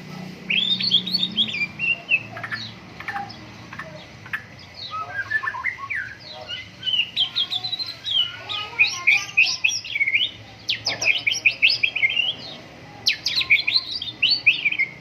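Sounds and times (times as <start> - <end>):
bird singing whistled notes: 0.5 - 2.3, 4.8 - 12.5, 13.1 - 15.0.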